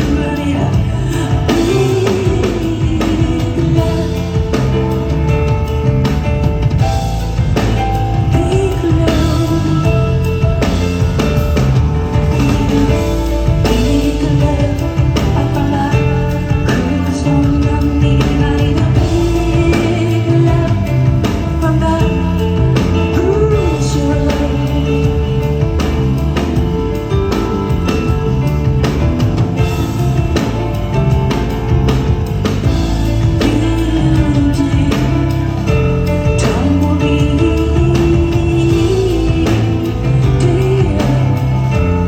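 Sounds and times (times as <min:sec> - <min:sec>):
woman singing: 0:00.0 - 0:29.0, 0:29.6 - 0:42.0
bass guitar: 0:00.0 - 0:42.0
drum kit: 0:00.0 - 0:42.0.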